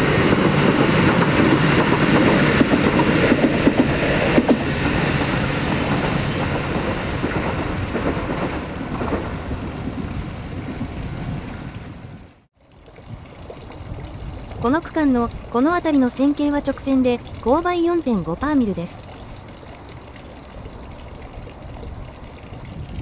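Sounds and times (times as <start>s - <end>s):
wheels clacking over rail joints: 0.0s - 12.0s
electric train passing: 0.0s - 12.4s.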